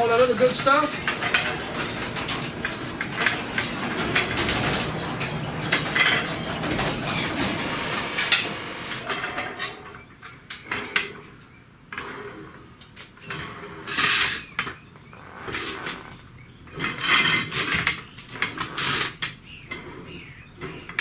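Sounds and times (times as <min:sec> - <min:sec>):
metal tools clinking and rattling: 0:00.0 - 0:11.2, 0:16.7 - 0:19.9.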